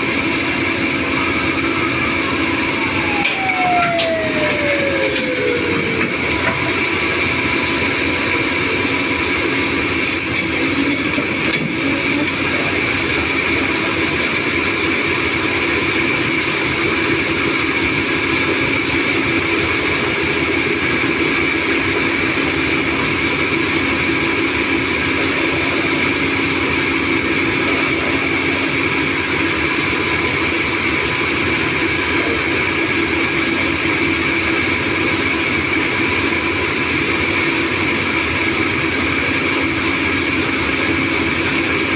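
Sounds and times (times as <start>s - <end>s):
steady high tone: 0.0s - 11.0s
excavator diesel engine running: 0.0s - 41.9s.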